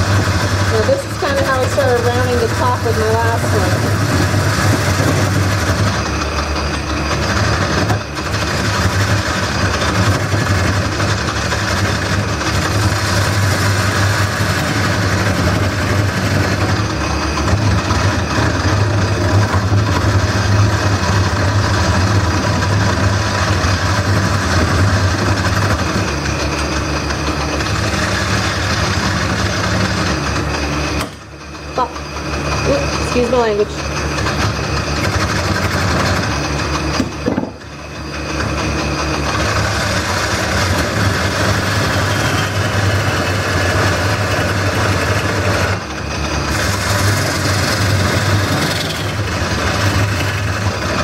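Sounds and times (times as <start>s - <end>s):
lathe motor hum: 0.0s - 51.0s
tool scraping spinning wood: 0.0s - 51.0s.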